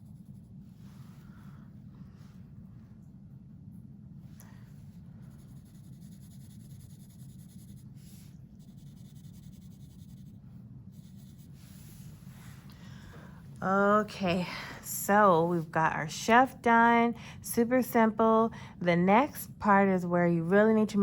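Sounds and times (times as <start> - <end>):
steady low hum: 0.0 - 21.0
soft scratches: 4.5 - 12.8
pencil drawing on paper: 5.2 - 12.6.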